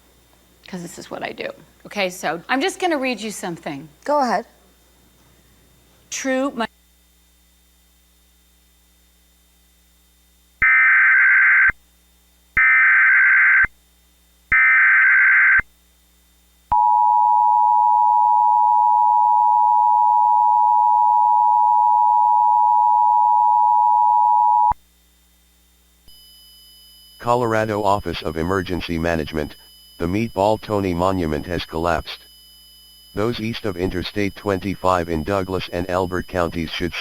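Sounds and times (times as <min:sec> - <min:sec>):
warbling digital data bursts: 0:33.1 - 0:37.0.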